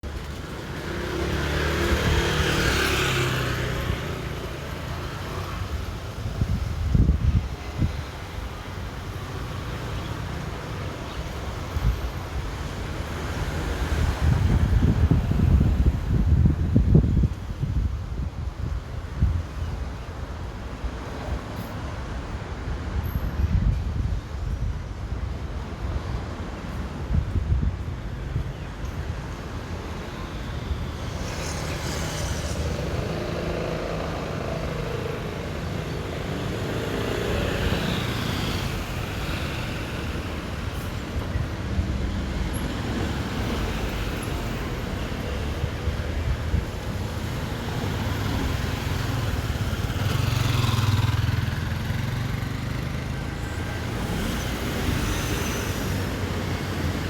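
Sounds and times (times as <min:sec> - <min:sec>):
wind rumble on microphone: 0:00.0 - 0:09.8, 0:11.3 - 0:52.8
cars passing: 0:00.0 - 0:19.5, 0:29.2 - 0:57.0
steady traffic noise: 0:00.0 - 0:57.0
vehicle passing close: 0:46.5 - 0:57.0.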